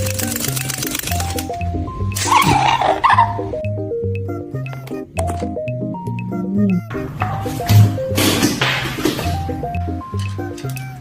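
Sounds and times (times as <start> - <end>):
bouncy background music: 0.0 - 11.0
parrot screech: 2.2 - 3.4.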